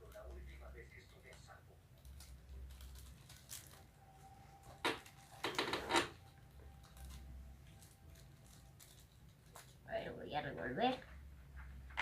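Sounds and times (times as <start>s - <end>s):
small objects clattering: 2.0s - 9.9s.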